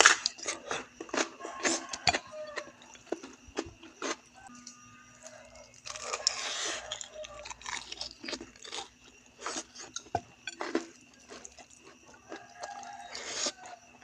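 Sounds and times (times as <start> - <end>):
chewing crispy fried chicken: 0.0 - 4.5, 5.2 - 14.0.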